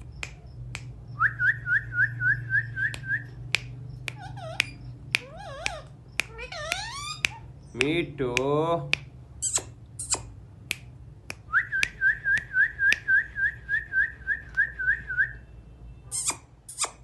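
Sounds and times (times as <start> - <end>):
parrot clicking: 2.9 - 13.2.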